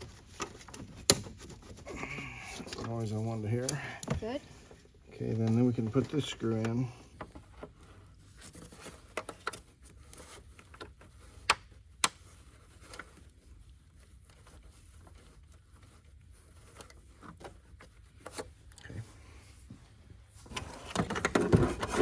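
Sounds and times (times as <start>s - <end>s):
clicks taps and scrapes on car parts: 0.0s - 1.8s.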